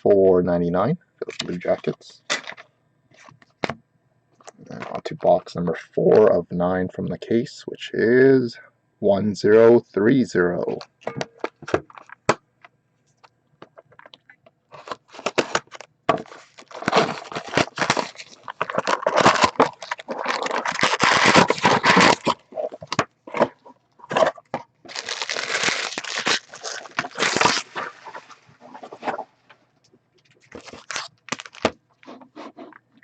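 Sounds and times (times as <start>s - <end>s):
plastic wrap crinkling and tearing: 14.7s - 29.1s, 30.3s - 31.8s.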